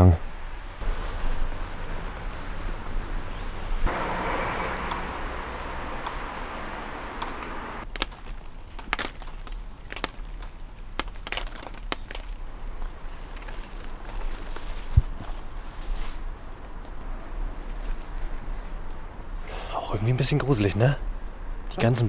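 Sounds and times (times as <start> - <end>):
wind noise: 0.8 - 8.9
footsteps crunching: 0.8 - 12.5
sharp irregular cracks: 0.8 - 14.0.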